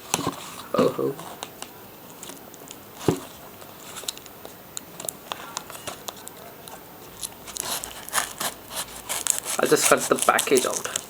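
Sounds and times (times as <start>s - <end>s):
stiff packaging crackling: 1.4s - 11.0s
packaging sharp snap: 7.2s - 11.0s.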